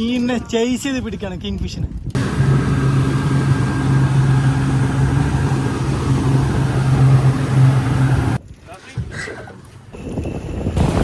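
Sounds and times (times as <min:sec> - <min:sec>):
boat engine humming: 0:02.2 - 0:08.5, 0:09.6 - 0:11.0.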